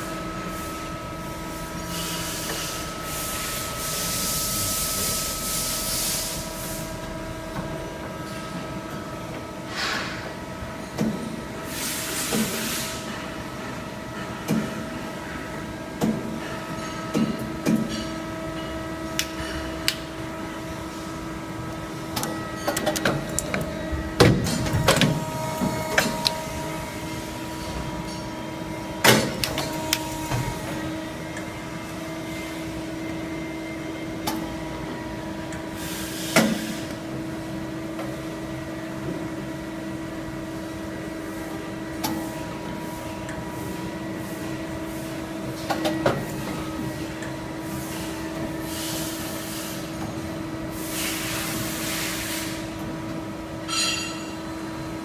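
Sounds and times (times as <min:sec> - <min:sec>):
machine motor hum: 0:18.7 - 0:35.6
mechanical clunks and clicks: 0:22.1 - 0:26.6.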